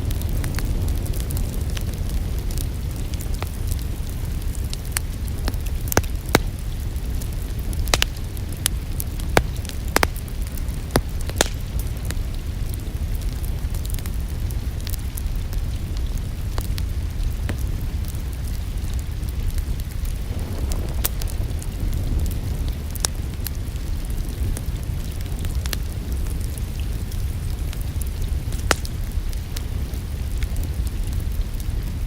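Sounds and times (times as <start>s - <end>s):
wood fire crackling: 0.0s - 32.0s
low rumble: 15.6s - 32.0s.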